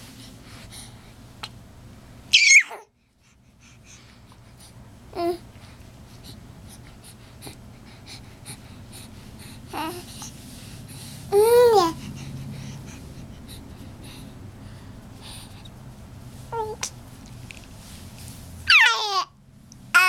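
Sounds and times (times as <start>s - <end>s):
pet squealing and whining: 2.3s - 2.8s, 18.7s - 19.1s.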